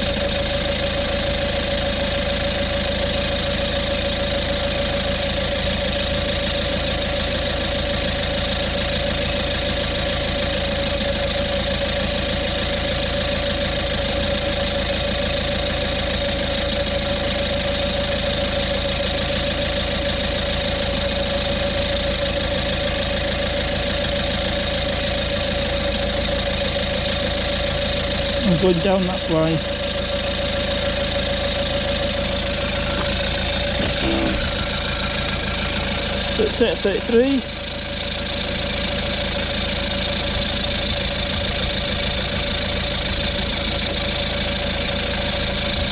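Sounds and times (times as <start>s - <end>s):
tyre inflator compressor running: 19.1s - 45.9s.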